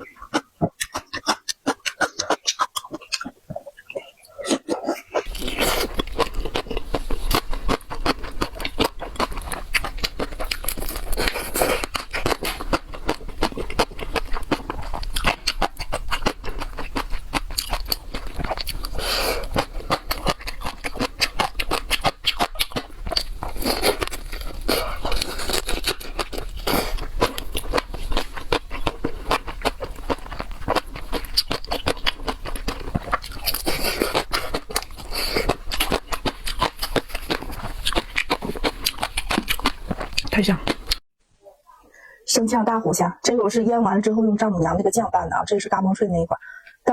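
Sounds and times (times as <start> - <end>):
crunchy chewing: 0.0 - 41.0.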